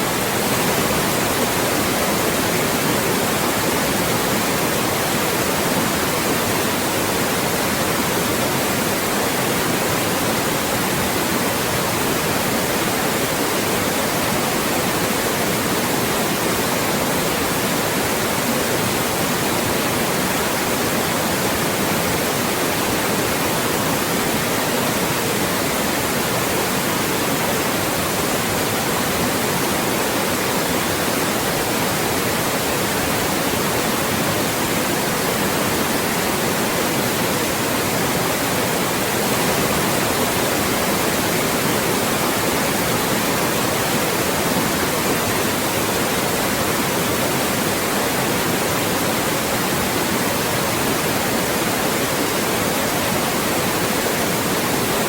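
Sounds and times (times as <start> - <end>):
loud steady white noise: 0.0 - 55.0.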